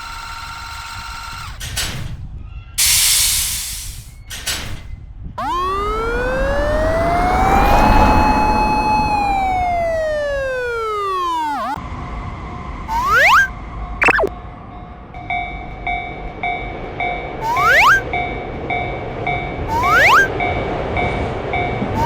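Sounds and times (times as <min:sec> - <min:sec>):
air hiss burst: 0:02.8 - 0:04.2
electric motor whine: 0:05.4 - 0:11.8.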